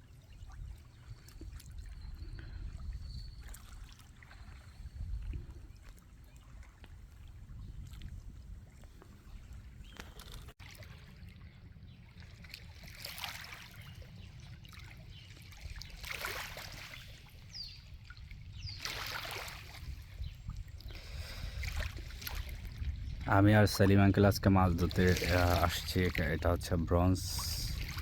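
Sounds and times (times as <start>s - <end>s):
wind rumble on microphone: 0.0s - 10.5s, 16.7s - 28.0s
water lapping at the shore: 0.0s - 28.0s.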